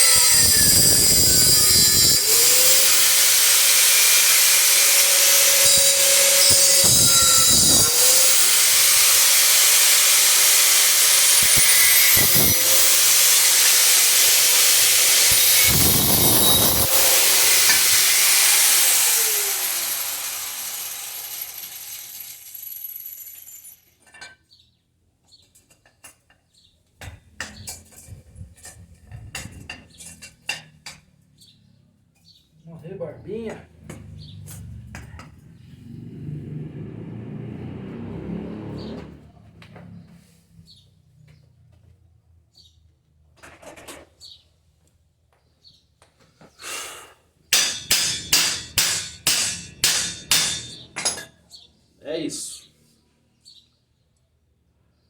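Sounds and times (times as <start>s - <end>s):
angle grinder grinding metal: 0.0s - 23.8s, 47.5s - 51.2s.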